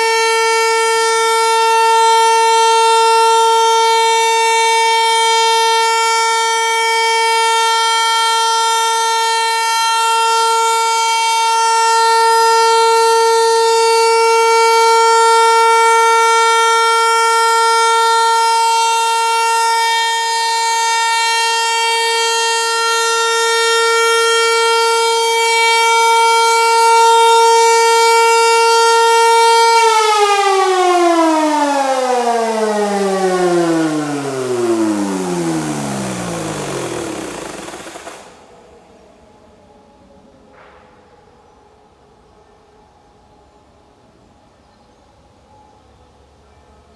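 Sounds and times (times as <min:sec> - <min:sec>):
siren rotor winding down: 0:00.0 - 0:10.6, 0:14.3 - 0:38.8
motor siren steady tone: 0:00.0 - 0:39.0.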